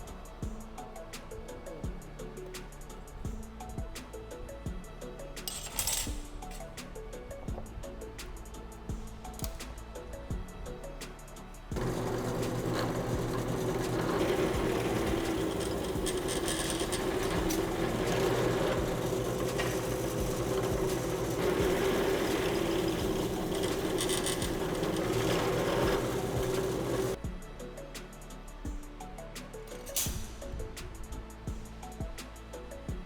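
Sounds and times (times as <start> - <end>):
small motor rattling: 11.8 - 27.2.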